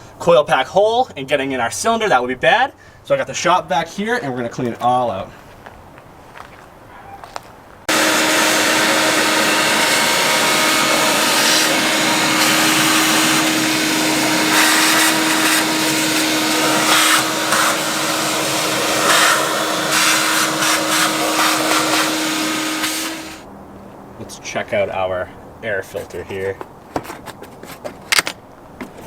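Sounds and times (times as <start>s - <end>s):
shop vac whining: 7.3s - 23.5s.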